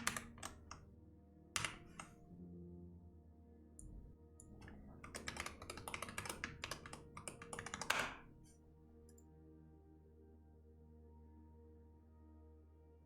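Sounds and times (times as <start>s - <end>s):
fast typing on keyboard: 0.0s - 0.8s, 1.6s - 2.2s, 4.5s - 8.5s
soft background music: 0.0s - 13.0s.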